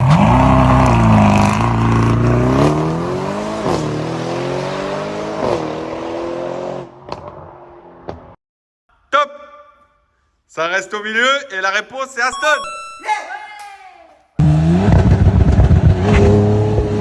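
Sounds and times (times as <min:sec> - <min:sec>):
car engine accelerating: 0:00.0 - 0:08.3, 0:14.4 - 0:17.0.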